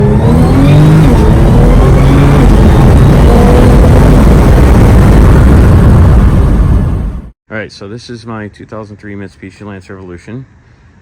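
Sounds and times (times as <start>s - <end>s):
turbocharged car engine running: 0.0s - 7.3s.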